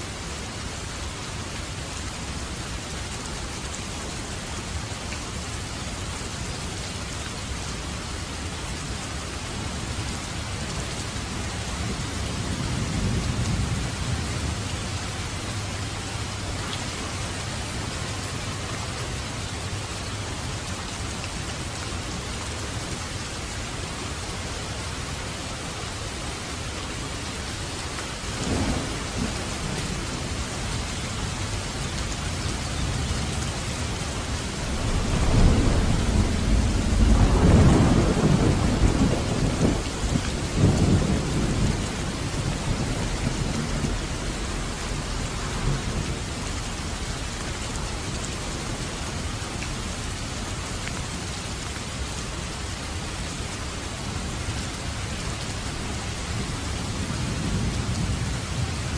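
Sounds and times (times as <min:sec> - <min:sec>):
heavy rain: 0:00.0 - 0:58.9
rolling thunder: 0:28.4 - 0:30.5, 0:34.4 - 0:47.0, 0:57.0 - 0:58.9.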